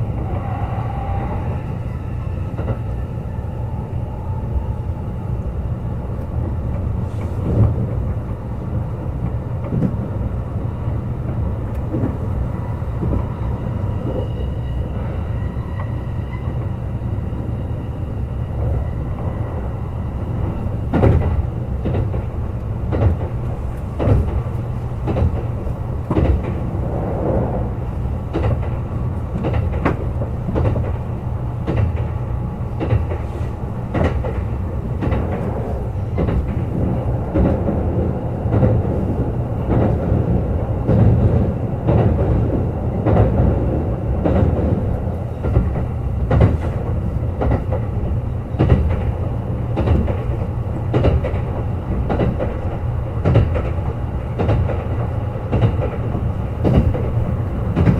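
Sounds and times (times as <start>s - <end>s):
train low rumble: 0.0s - 57.9s
wheels clacking over rail joints: 20.9s - 27.4s, 28.2s - 57.9s.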